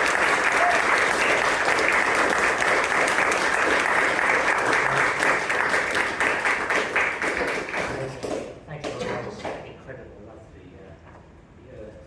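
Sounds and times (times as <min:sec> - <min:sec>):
audience applauding: 0:00.0 - 0:08.4.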